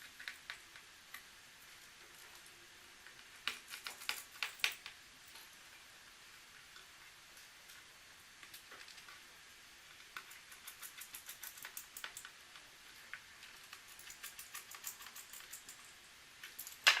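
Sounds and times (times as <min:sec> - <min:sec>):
light clicks of small parts and tools: 0:02.1 - 0:05.5, 0:09.9 - 0:17.0.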